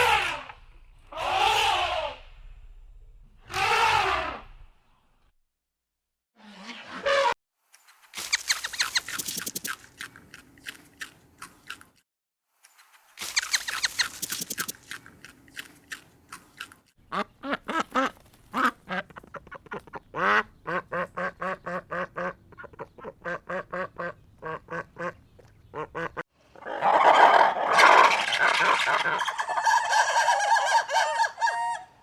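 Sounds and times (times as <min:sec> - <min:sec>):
poultry calls: 0:13.2 - 0:14.8.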